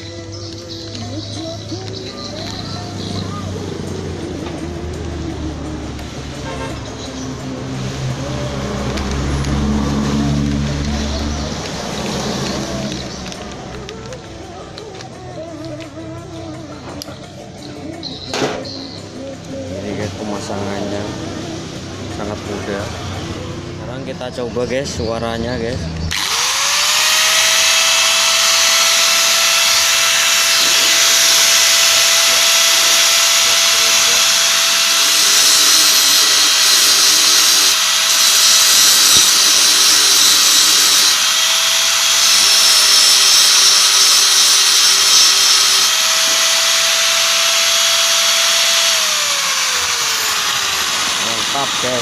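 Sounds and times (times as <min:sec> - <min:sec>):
angle grinder high whine: 0:00.0 - 0:15.5, 0:26.0 - 0:52.0.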